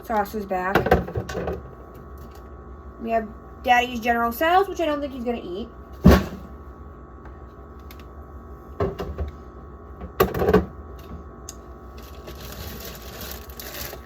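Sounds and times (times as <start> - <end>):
steady hum: 0.0 - 14.0
bottles and jars clunking on shelves: 0.7 - 1.8, 8.8 - 9.4, 10.0 - 11.2.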